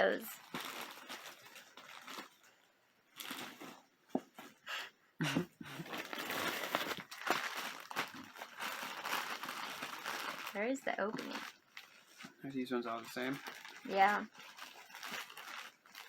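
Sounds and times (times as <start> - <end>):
plastic packaging crinkling: 0.0 - 3.9, 5.8 - 16.0.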